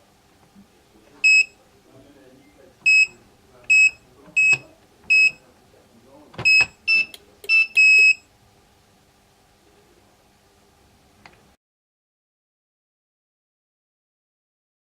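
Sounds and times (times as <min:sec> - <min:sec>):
keypad electronic beeps: 0:01.2 - 0:01.5, 0:02.9 - 0:03.1, 0:03.7 - 0:05.4, 0:06.4 - 0:08.2.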